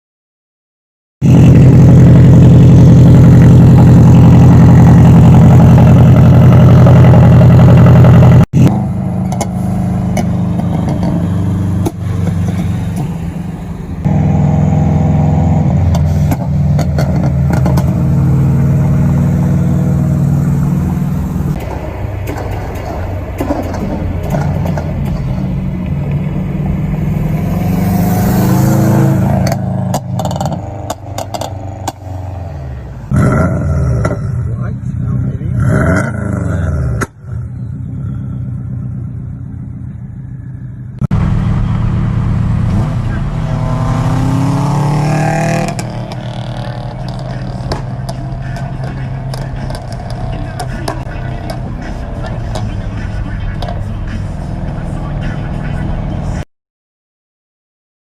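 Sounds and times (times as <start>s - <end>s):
car engine revving and idling: 1.2s - 56.4s
exhaust pops and crackles: 15.9s - 18.0s, 21.6s - 26.2s, 45.7s - 52.8s.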